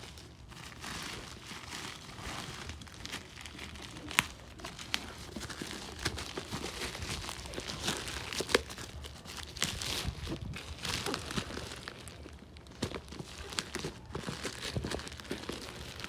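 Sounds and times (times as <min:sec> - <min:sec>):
packaging crinkling and rustling: 0:00.0 - 0:16.0.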